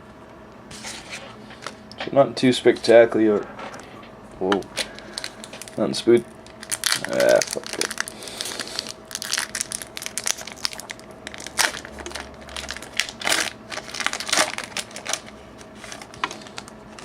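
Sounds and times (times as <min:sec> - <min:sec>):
foil wrapper crinkling: 0:04.7 - 0:17.0.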